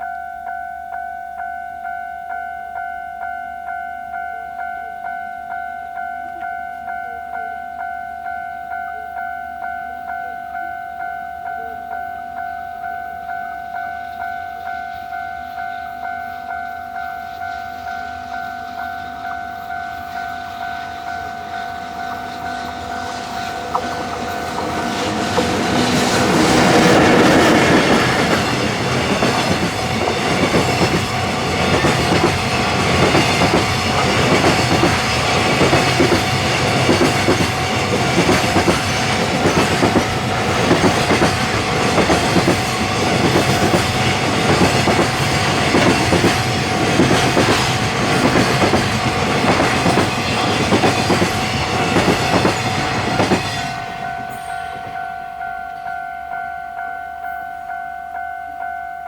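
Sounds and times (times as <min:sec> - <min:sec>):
electric locomotive passing: 0:00.0 - 0:59.0
level-crossing warning bell: 0:00.0 - 0:59.0
train wheels clattering over joints: 0:20.3 - 0:54.4.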